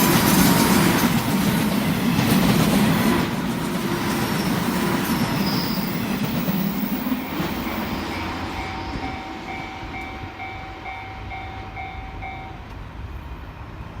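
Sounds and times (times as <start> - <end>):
electric train rumbling on rails: 0.0 - 14.0
level crossing warning bell: 7.9 - 12.7.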